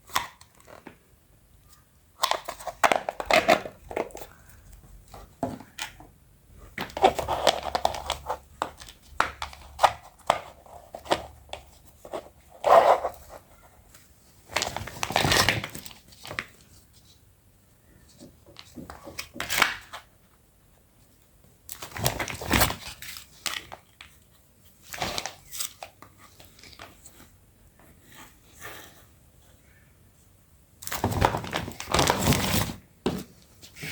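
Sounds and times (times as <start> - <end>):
packaging crinkling and tearing: 14.5 - 16.5, 21.7 - 23.8, 30.8 - 32.8.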